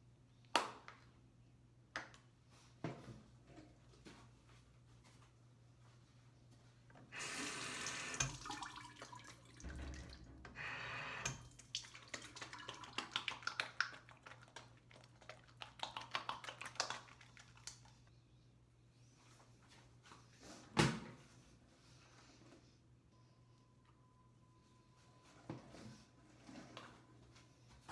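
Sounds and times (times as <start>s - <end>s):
tap water running into sink: 7.2s - 14.5s
water splashing and dripping: 7.8s - 10.6s, 11.2s - 17.9s.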